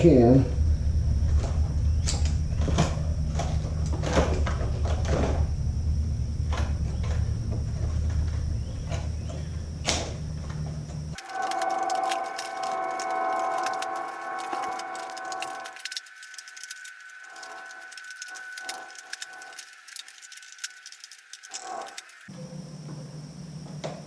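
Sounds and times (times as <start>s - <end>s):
shears snipping: 11.2s - 22.3s
steady pitched tone: 11.2s - 22.3s.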